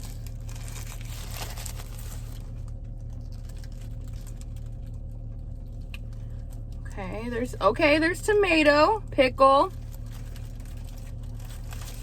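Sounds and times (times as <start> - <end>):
paper wrapper crinkling: 0.0 - 6.8, 9.7 - 12.0
steady low hum: 0.0 - 12.0.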